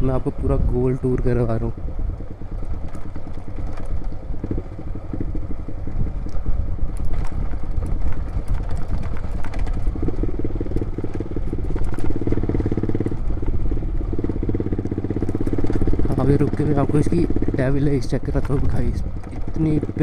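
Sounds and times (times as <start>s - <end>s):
motorcycle exhaust: 0.0s - 20.0s.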